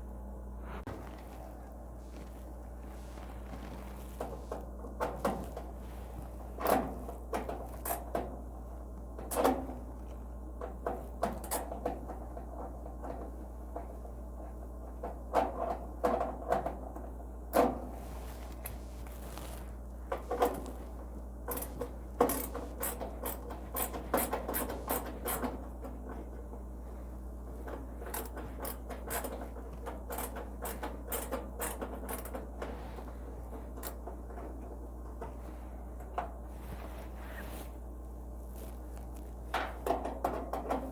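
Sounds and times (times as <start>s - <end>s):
steady low hum: 0.0s - 40.9s
clicks and knocks on metal panels: 10.6s - 14.0s, 15.0s - 17.9s, 39.5s - 40.9s.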